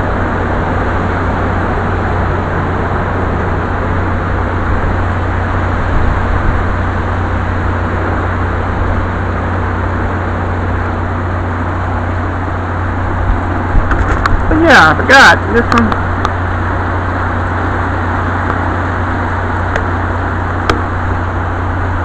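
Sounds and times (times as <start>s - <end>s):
low hum: 0.0s - 22.0s
steady rainfall hiss: 0.0s - 22.0s.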